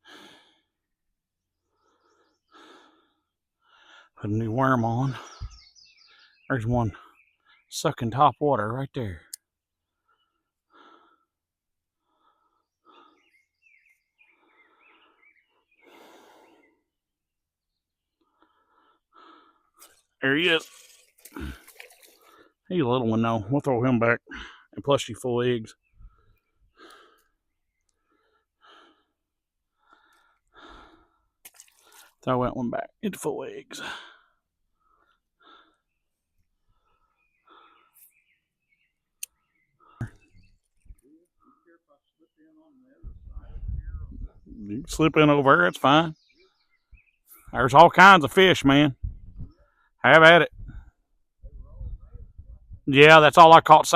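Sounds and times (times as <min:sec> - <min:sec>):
heavy laboured breathing: 0:00.0 - 0:00.8, 0:01.6 - 0:04.2, 0:09.9 - 0:17.1, 0:18.1 - 0:20.2, 0:21.2 - 0:22.7, 0:25.7 - 0:32.2, 0:33.7 - 0:38.2
birds chirping: 0:00.0 - 0:53.9
man breathing wheezily: 0:14.3 - 0:16.9, 0:28.0 - 0:32.1.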